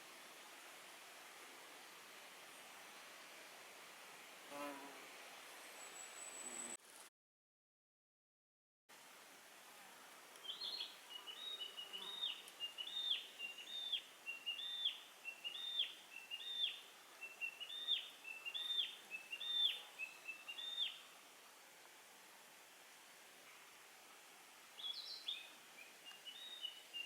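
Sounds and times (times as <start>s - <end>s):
outdoor hiss: 0.0s - 7.1s, 8.9s - 27.0s
songbird singing: 5.6s - 6.8s, 10.4s - 21.0s, 24.8s - 27.0s.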